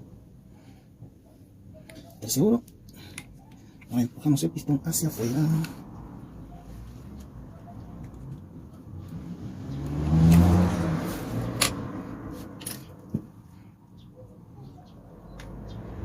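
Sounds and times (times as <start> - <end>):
motor vehicle passing by: 5.2 - 13.1, 14.8 - 16.0.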